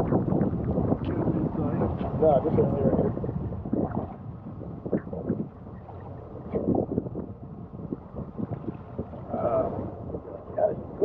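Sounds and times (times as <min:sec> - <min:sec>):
wind buffeting microphone: 0:00.0 - 0:11.0.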